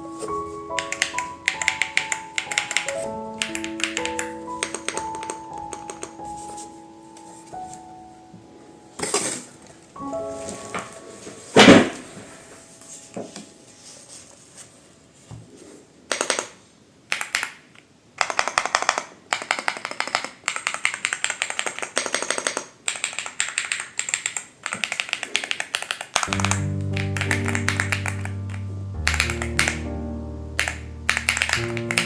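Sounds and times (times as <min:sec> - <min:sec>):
typing on mechanical keyboard: 0:00.8 - 0:06.2, 0:16.1 - 0:29.9, 0:30.6 - 0:32.0
loud knock: 0:11.6 - 0:12.1.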